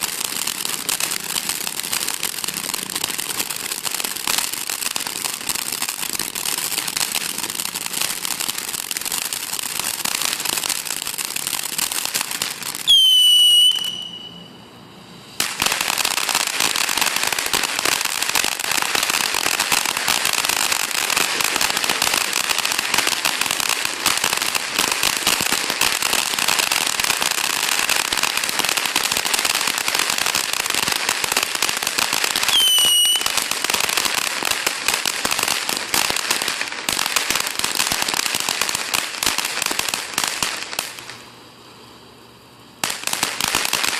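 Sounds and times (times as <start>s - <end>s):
firework fountain crackling: 0.0s - 43.9s
descending firework whistle: 12.6s - 14.8s, 32.2s - 33.5s.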